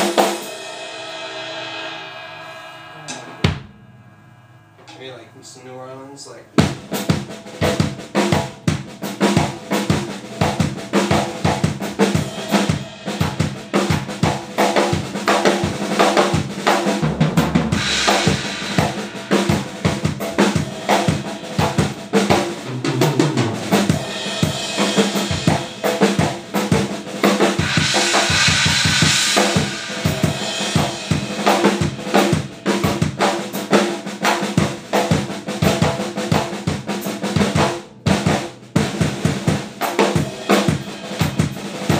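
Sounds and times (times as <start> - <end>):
drum roll: 0.0 - 41.9
cymbals ringing: 0.4 - 8.0, 17.8 - 26.2, 27.5 - 33.1
bass drum: 2.4 - 5.0, 6.5 - 15.8, 16.4 - 33.2.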